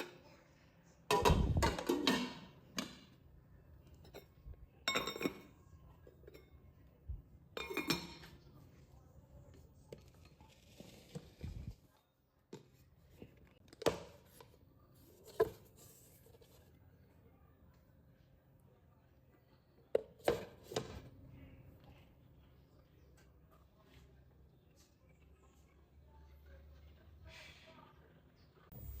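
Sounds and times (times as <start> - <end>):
dishes and cutlery clinking: 1.1 - 3.2, 3.8 - 6.8, 7.5 - 8.6.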